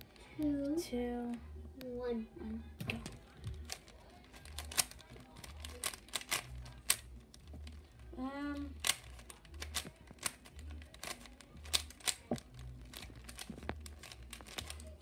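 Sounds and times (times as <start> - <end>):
puzzle cube plastic clicks: 3.0 - 7.8, 8.8 - 15.0.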